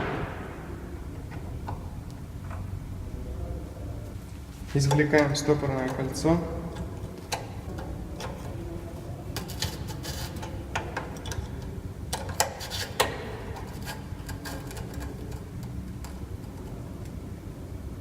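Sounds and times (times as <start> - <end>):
low hum: 0.0 - 4.6.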